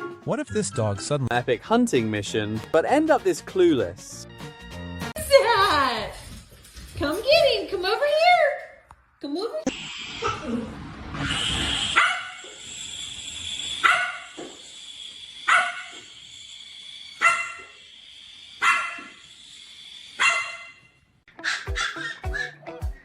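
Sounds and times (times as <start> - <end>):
dog barking: 11.9 - 12.4, 13.8 - 14.3, 15.5 - 16.0, 17.2 - 17.8, 18.6 - 19.2, 20.2 - 20.8, 21.4 - 22.6.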